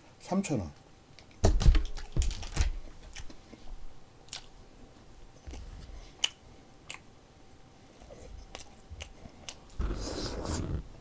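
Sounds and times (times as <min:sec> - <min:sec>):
person chewing food: 0:05.5 - 0:07.1, 0:07.8 - 0:11.0.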